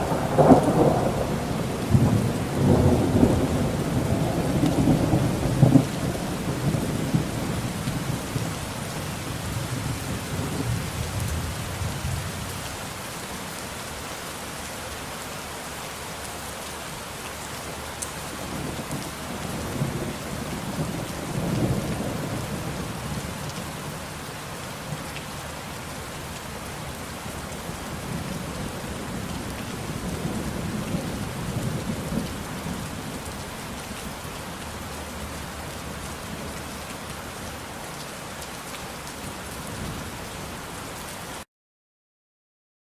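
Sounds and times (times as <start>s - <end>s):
rolling thunder: 0.0s - 8.6s, 27.7s - 33.3s
steady rain: 0.0s - 41.5s.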